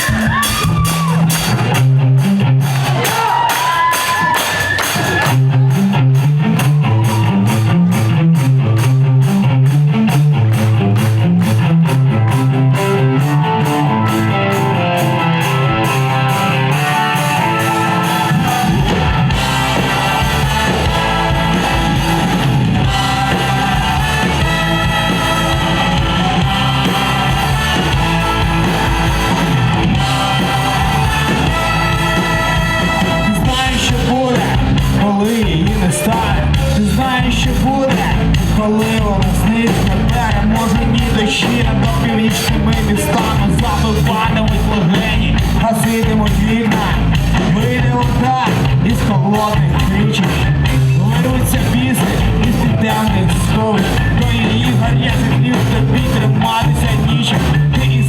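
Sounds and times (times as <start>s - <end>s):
rock band playing: 0.0s - 58.0s.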